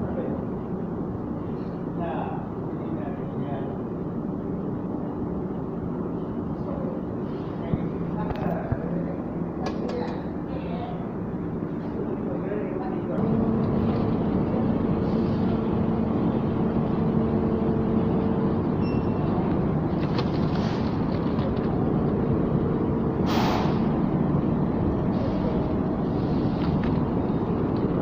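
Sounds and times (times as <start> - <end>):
air conditioner fan rush: 0.0 - 28.0
low hum: 13.1 - 28.0
short hiss: 23.3 - 23.8.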